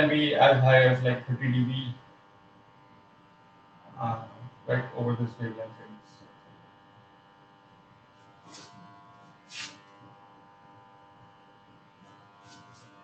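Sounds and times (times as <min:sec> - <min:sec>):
faint electrical buzz: 0:00.0 - 0:13.0
short hissy sounds: 0:08.4 - 0:08.8, 0:09.4 - 0:10.0.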